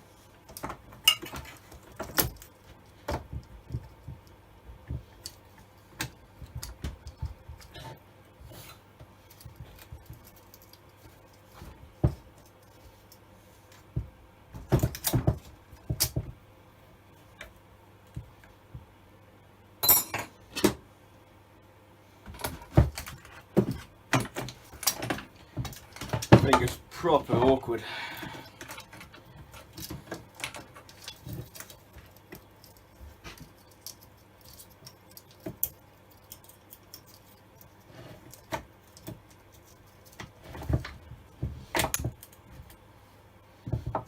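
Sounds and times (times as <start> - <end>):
steady low hum: 0.0 - 44.0
metal tools clinking and clattering: 19.8 - 20.3.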